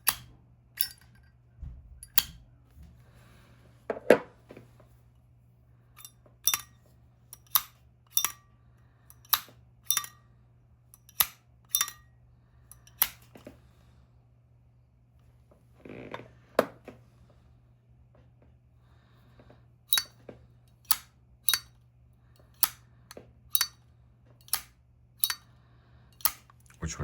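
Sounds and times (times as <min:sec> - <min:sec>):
lighter lid clicking open and shut: 0:00.0 - 0:01.0, 0:06.4 - 0:06.7, 0:07.3 - 0:08.4, 0:09.1 - 0:10.1, 0:11.0 - 0:12.0, 0:12.7 - 0:13.3, 0:19.9 - 0:20.2, 0:20.8 - 0:21.8, 0:22.4 - 0:22.9, 0:23.5 - 0:23.8, 0:24.4 - 0:25.5, 0:26.2 - 0:26.5.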